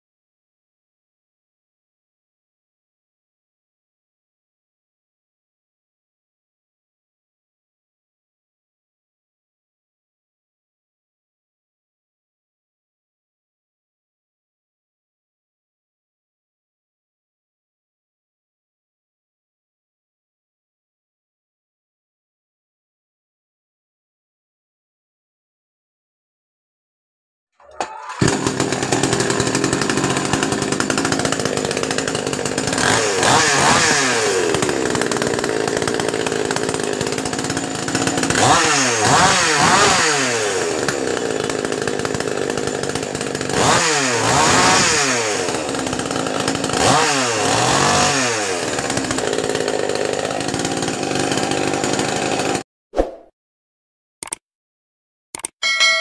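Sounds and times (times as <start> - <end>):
chainsaw engine revving: 27.6 - 52.6.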